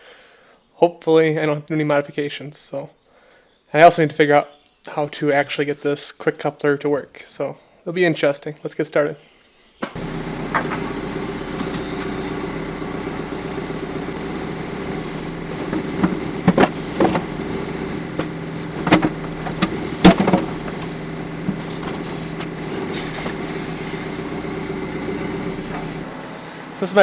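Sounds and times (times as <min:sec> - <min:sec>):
diesel engine idling: 0:10.0 - 0:27.0.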